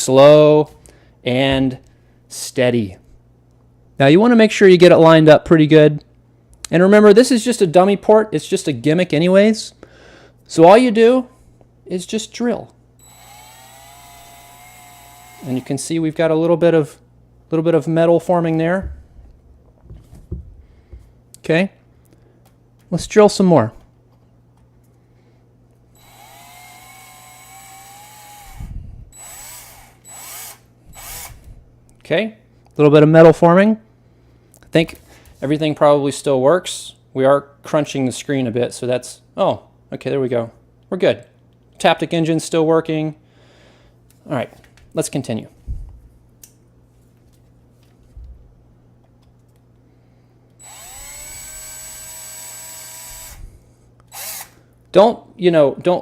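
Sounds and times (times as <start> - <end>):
power drill whining: 13.0 - 15.9, 26.0 - 31.5, 50.6 - 53.5, 54.1 - 54.6.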